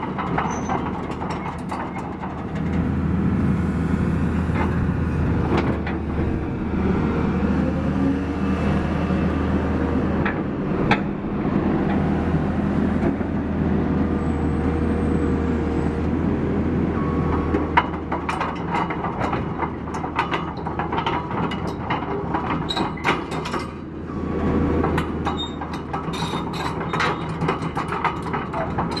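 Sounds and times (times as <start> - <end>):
excavator diesel engine running: 0.0 - 19.9.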